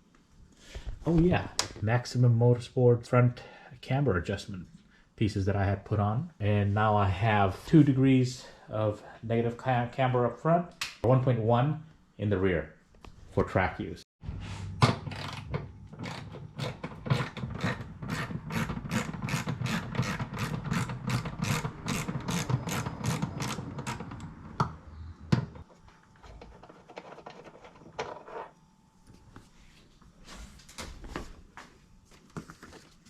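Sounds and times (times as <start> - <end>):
ratchet wrench clicking: 18.6 - 24.0.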